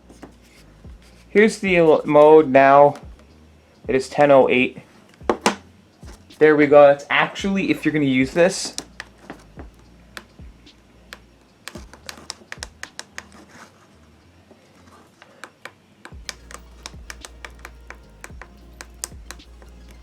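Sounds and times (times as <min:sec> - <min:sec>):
low hum: 0:00.0 - 0:01.9, 0:03.0 - 0:04.1, 0:07.4 - 0:12.8
plastic buttons clicking: 0:11.1 - 0:13.4, 0:15.4 - 0:19.5.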